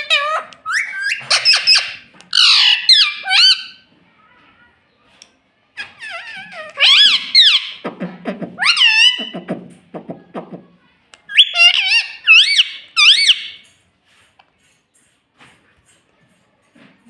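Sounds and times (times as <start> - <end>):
parakeet shrill calls: 0.0 - 3.8, 5.8 - 7.8, 11.3 - 13.6.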